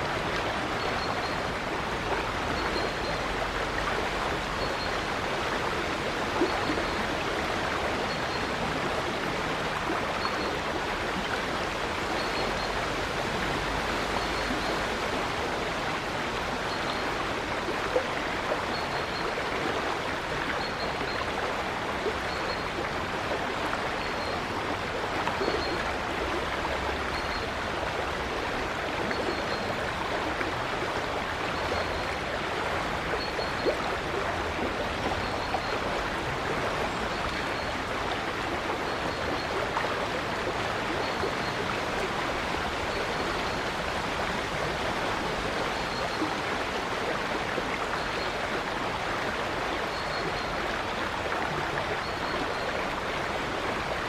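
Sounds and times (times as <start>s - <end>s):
river water flowing: 0.0s - 54.0s.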